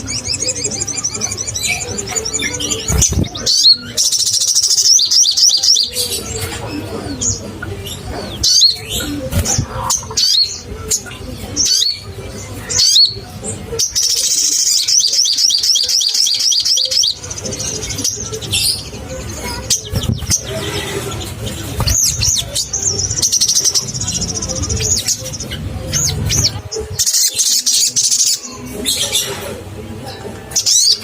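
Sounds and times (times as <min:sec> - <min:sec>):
bird high chirps: 0:00.0 - 0:06.5, 0:13.8 - 0:29.4
rapid run of repeated bird notes: 0:00.0 - 0:31.0.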